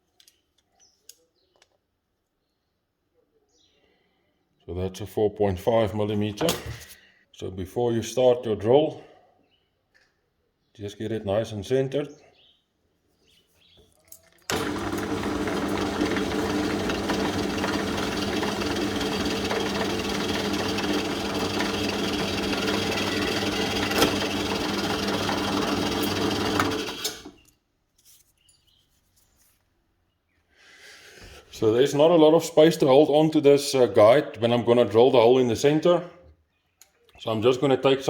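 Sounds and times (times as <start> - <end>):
electric drill drilling plexiglass: 14.5 - 27.4.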